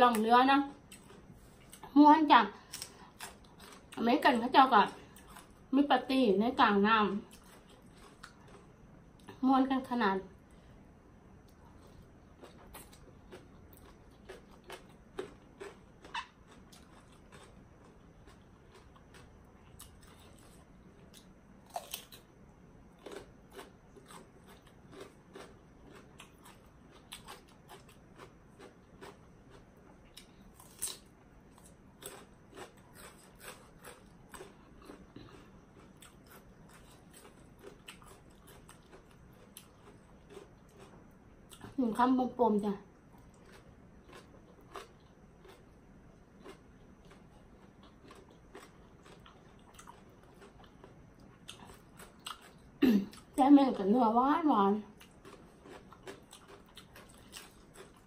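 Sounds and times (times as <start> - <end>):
wet chewing with crunches: 0.1 - 2.0, 7.1 - 9.4, 11.4 - 22.3, 22.9 - 41.8, 43.1 - 53.4, 55.0 - 58.0
crunchy bites: 7.2 - 9.4, 11.4 - 41.7, 43.2 - 53.4, 55.0 - 58.0.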